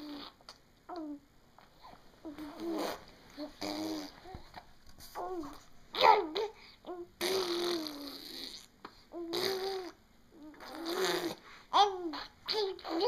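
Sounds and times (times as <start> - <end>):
baby blowing raspberries: 2.3 - 4.3, 7.2 - 11.6.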